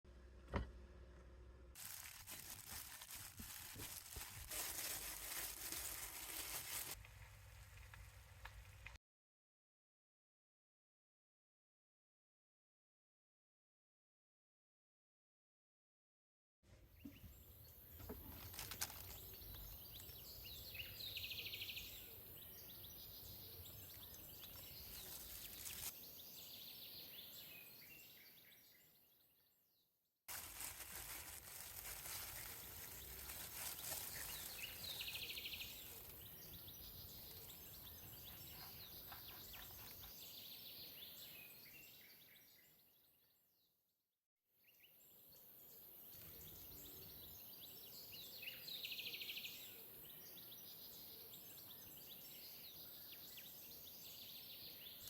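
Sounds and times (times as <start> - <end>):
bird chirps: 17.0 - 29.2, 32.2 - 43.0.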